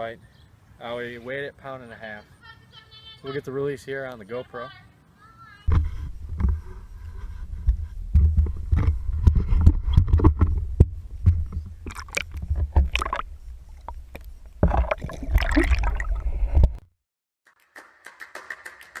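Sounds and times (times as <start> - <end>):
low rumble: 5.7 - 16.8
water splashing and sloshing: 5.7 - 16.8.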